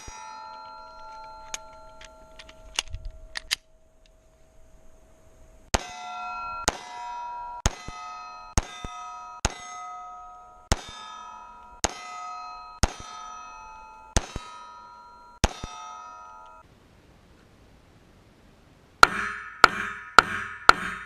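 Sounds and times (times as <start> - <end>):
steel target ringing: 0.0 - 2.7, 5.7 - 16.6, 19.0 - 21.0
pistol shots: 10.7 - 12.1.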